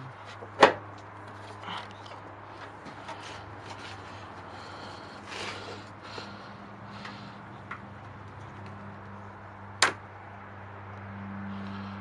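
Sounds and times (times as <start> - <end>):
rubbing and scraping of parts: 0.2 - 4.5.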